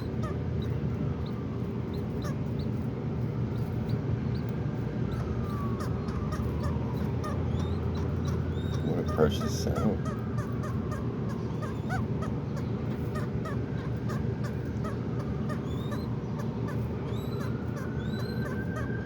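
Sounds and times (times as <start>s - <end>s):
low background rumble: 0.0s - 19.0s
small birds chirping: 0.0s - 19.0s
doves cooing: 4.9s - 19.0s.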